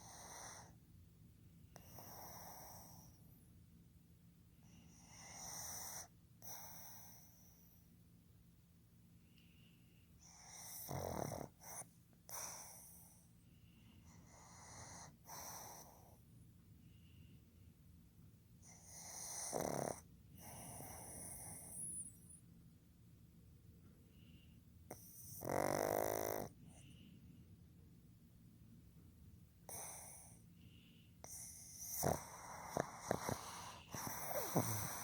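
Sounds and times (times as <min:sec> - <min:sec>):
dog snoring: 0:00.0 - 0:00.8, 0:01.7 - 0:03.2, 0:04.6 - 0:07.9, 0:10.2 - 0:13.2, 0:14.0 - 0:16.2, 0:18.6 - 0:22.3, 0:24.9 - 0:26.9, 0:29.6 - 0:30.4, 0:31.2 - 0:35.0.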